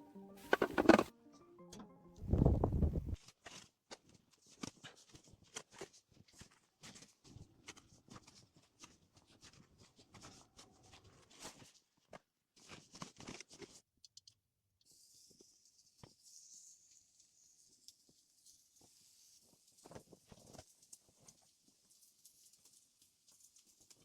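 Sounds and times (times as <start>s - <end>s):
faint crunching and clicking: 0.4s - 1.1s.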